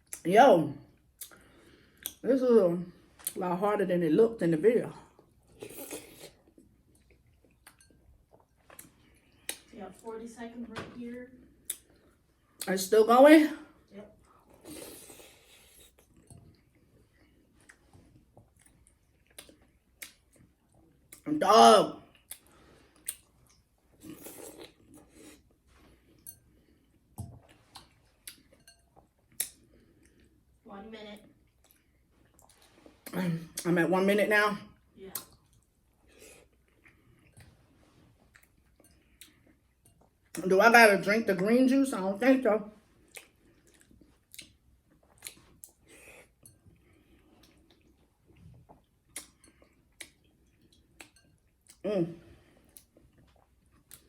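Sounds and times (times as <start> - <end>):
person chewing food: 1.0 - 2.2, 5.0 - 9.8, 11.4 - 12.7, 14.2 - 21.3, 22.0 - 30.6, 31.3 - 33.6, 34.8 - 40.4, 42.9 - 54.0
wet mouth noises: 47.4 - 51.9
lip and tongue clicks: 48.8 - 50.3.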